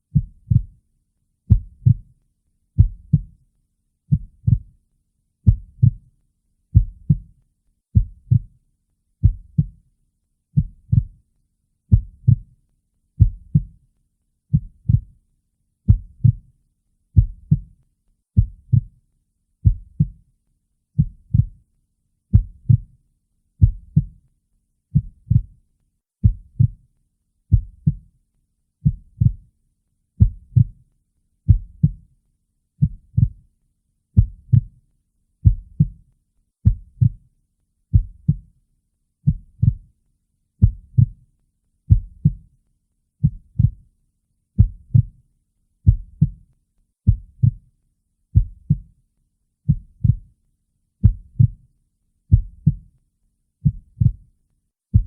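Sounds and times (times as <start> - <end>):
heartbeat thumps: 1.5 - 2.0, 2.8 - 3.3, 4.1 - 4.7, 5.5 - 6.0, 6.8 - 7.2, 8.0 - 8.5, 9.2 - 9.7, 11.9 - 12.4, 14.5 - 15.1, 15.9 - 16.4, 18.4 - 18.9, 19.6 - 20.2, 25.0 - 25.5, 26.2 - 26.8, 27.5 - 28.0, 30.2 - 30.7, 32.8 - 33.4, 34.2 - 34.7, 35.4 - 36.0, 36.6 - 37.2, 39.3 - 39.8, 40.6 - 41.2, 41.9 - 42.4, 43.2 - 43.8, 44.6 - 45.1, 45.9 - 46.4, 47.1 - 47.6, 48.4 - 48.8, 51.0 - 51.6, 52.3 - 52.8, 53.6 - 54.2.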